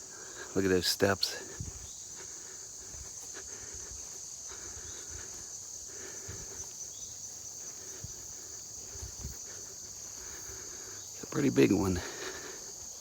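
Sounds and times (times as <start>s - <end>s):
crickets chirping: 0.0s - 13.0s
soft footsteps: 1.4s - 10.5s.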